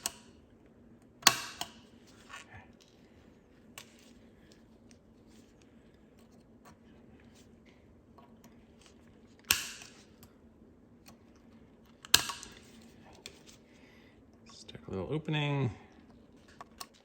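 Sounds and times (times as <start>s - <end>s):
tin snips cutting metal: 1.2s - 1.8s.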